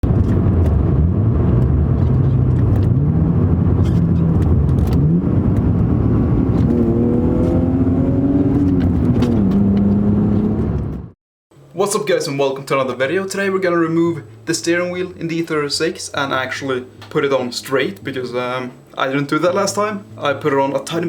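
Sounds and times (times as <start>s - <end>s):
car engine accelerating: 0.0s - 11.2s.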